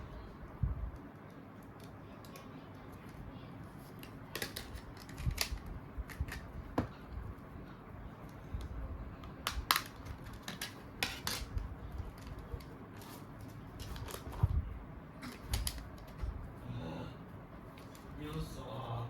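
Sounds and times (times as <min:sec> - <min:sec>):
plastic phone parts clicking: 0:04.0 - 0:06.5, 0:09.2 - 0:13.1.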